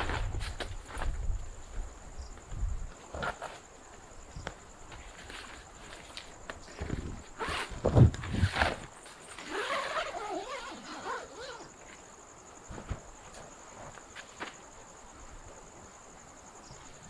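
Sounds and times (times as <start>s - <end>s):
insect chirring: 0.0s - 17.0s
wavering insect call: 0.0s - 17.0s.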